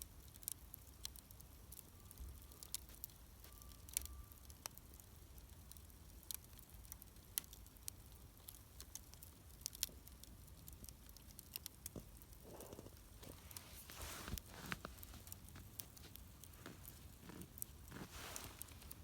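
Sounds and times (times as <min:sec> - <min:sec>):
wood fire crackling: 0:00.0 - 0:19.0
soft shuffling: 0:12.7 - 0:19.0.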